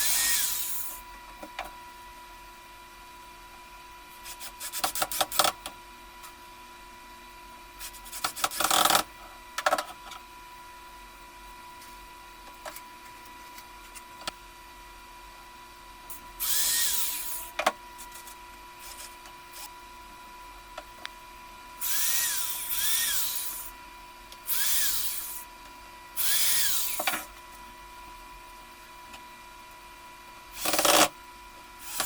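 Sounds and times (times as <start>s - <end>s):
electric drill motor spinning: 0.0s - 1.1s, 8.1s - 9.1s, 16.1s - 19.7s, 21.8s - 23.8s, 24.4s - 25.5s, 26.1s - 27.4s, 30.5s - 31.2s, 31.8s - 32.0s.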